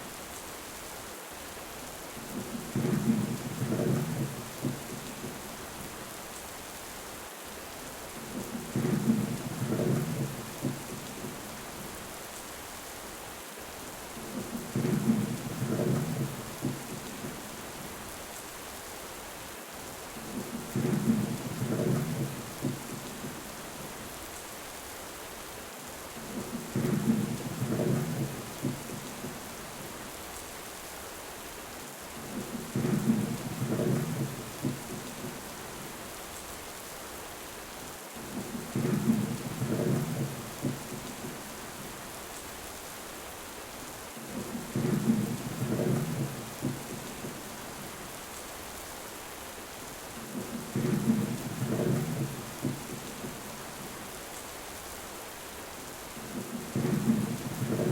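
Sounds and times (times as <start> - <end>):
heavy rain: 0.0 - 57.9
thunder rumbling: 26.3 - 29.4, 44.4 - 47.5, 50.3 - 53.5, 56.2 - 57.9.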